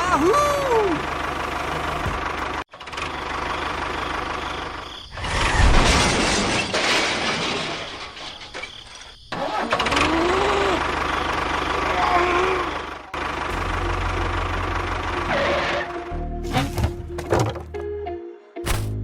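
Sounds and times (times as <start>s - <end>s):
small engine running: 9.7s - 16.1s.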